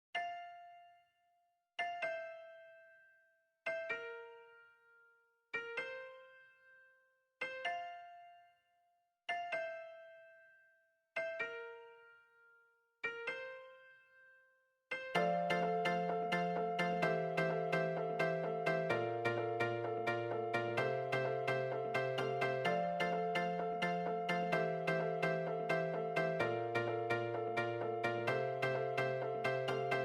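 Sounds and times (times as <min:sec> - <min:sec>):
slow piano-like keyboard notes: 0:01.8 - 0:03.0, 0:03.7 - 0:08.6, 0:09.3 - 0:10.5, 0:11.2 - 0:30.0.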